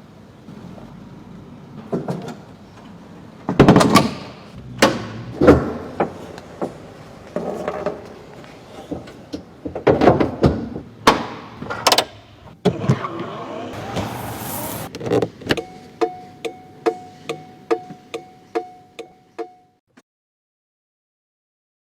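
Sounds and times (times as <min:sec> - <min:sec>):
held tone: 0:13.8 - 0:14.9.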